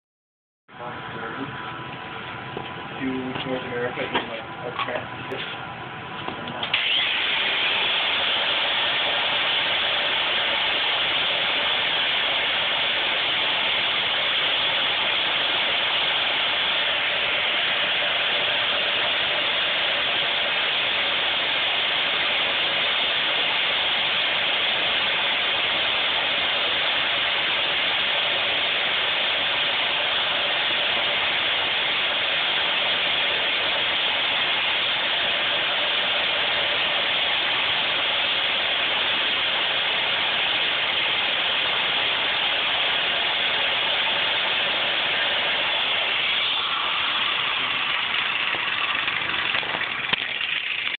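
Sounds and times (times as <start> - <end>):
disc brake grinding: 46.1 - 50.9.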